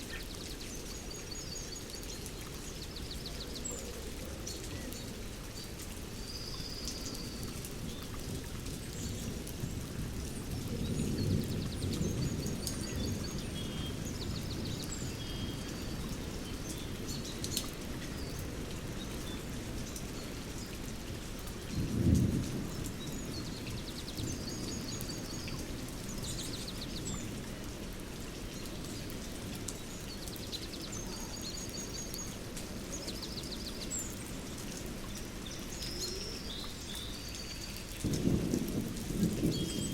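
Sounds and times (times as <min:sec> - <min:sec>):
steady rain: 0:00.0 - 0:39.9
thunder rumbling: 0:38.0 - 0:39.9.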